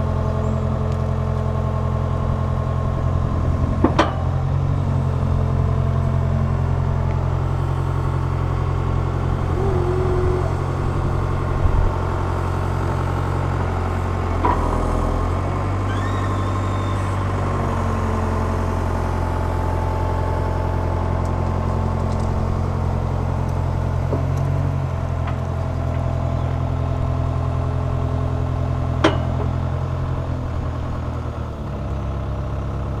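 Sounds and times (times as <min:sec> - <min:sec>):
diesel engine running: 0:00.0 - 0:33.0
rising hydraulic whine: 0:07.7 - 0:13.3, 0:14.5 - 0:18.5.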